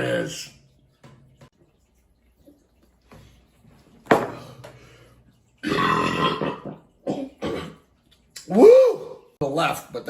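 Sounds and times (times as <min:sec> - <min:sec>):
man burping: 0:05.6 - 0:07.8.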